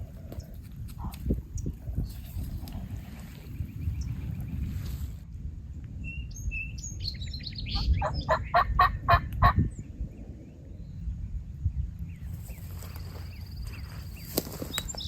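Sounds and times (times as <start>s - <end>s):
turkey gobbling: 7.8s - 9.6s.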